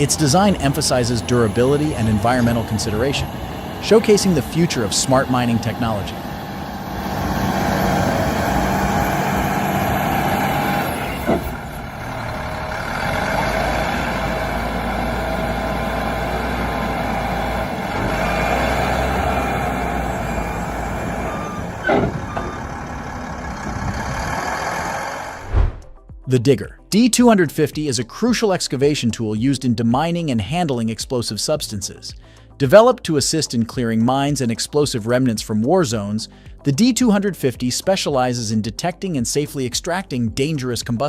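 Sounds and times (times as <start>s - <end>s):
heavy machinery engine rumbling: 0.0s - 25.9s
reversing alarm beeping: 19.7s - 23.2s.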